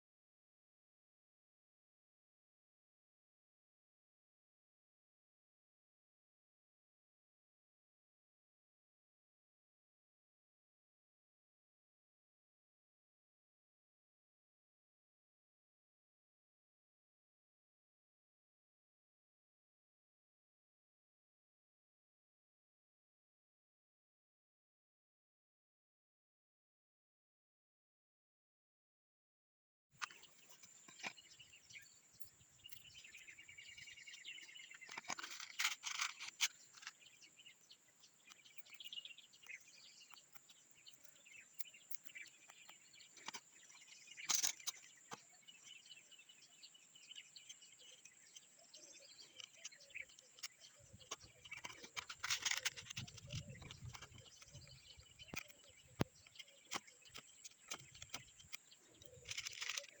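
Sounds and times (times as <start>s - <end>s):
faint bird chirps: 30.0s - 60.0s.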